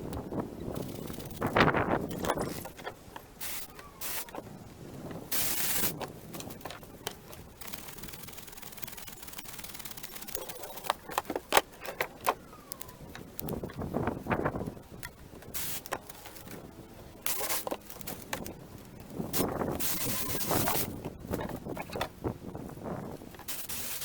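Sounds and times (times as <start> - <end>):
branches and wood knocking and scraping: 0.7 - 5.2, 5.8 - 8.2, 17.2 - 22.3.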